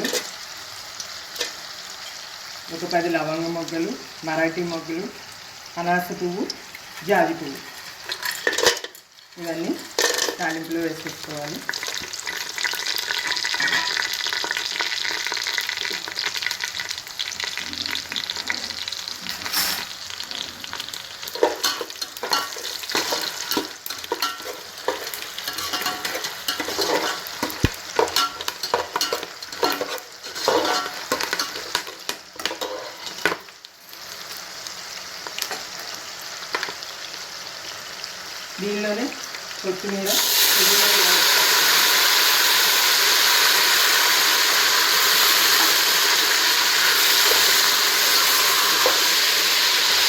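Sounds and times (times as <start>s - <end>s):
spices sizzling in hot oil: 0.0s - 50.0s
spoon scraping a pot: 21.3s - 33.4s.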